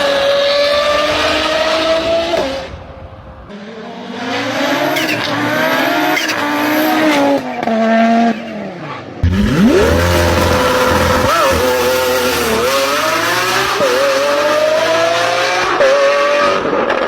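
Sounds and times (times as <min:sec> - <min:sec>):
car engine accelerating: 0:09.2 - 0:16.4
different engine revving: 0:09.2 - 0:16.5.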